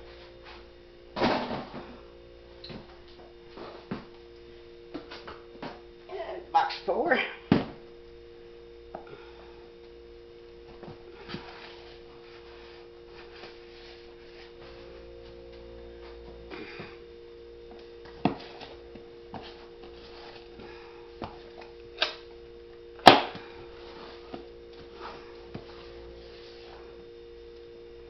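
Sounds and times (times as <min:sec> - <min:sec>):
steady two-tone hum: 0:00.0 - 0:28.0.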